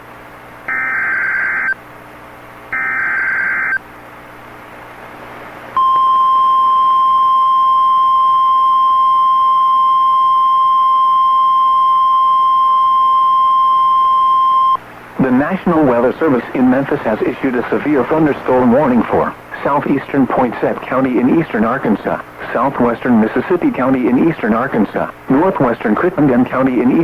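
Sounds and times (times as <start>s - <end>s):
single-pitch alarm tone: 0.7s - 1.8s, 2.7s - 3.8s, 5.8s - 14.8s.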